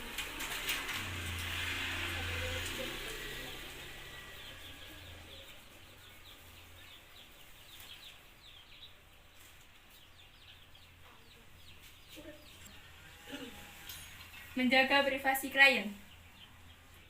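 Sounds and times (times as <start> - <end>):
faint birds chirping: 0.0 - 17.0.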